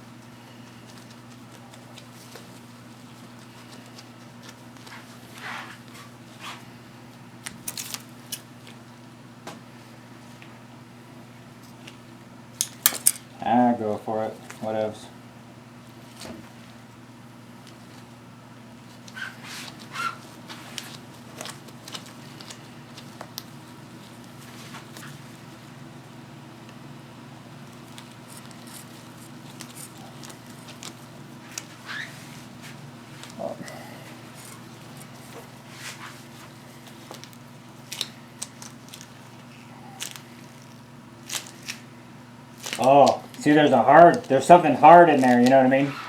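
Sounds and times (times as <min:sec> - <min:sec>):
steady low hum: 0:00.0 - 0:46.0
handling clicks and rustles: 0:27.6 - 0:33.5
short squeaks: 0:31.8 - 0:32.3.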